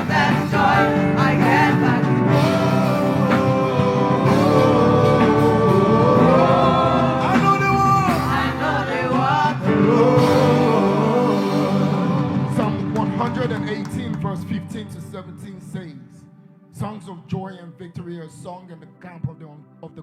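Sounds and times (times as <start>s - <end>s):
gospel band playing: 0.0s - 15.8s
person singing long held notes: 1.8s - 7.8s, 9.6s - 12.9s.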